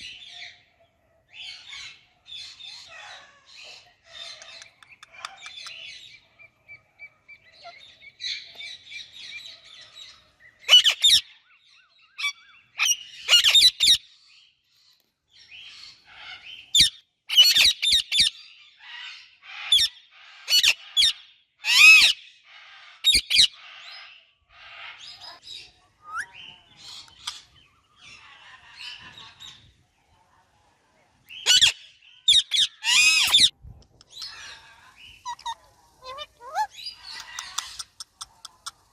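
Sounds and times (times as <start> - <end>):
parakeets chattering: 2.6 - 9.6, 24.6 - 29.6, 32.3 - 38.9
shrill parakeet calls: 10.6 - 11.2, 12.0 - 14.0, 20.5 - 25.4, 31.4 - 33.5, 34.1 - 38.9.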